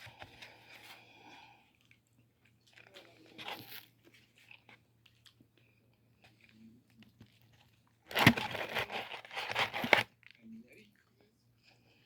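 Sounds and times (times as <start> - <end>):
paper packaging crinkling: 8.0 - 10.2.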